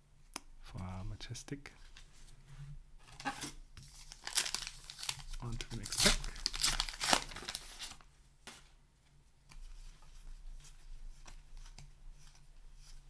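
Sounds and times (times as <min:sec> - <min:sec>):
paper wrapper crinkling: 0:03.4 - 0:08.6
cards clicking and rustling: 0:03.9 - 0:08.0.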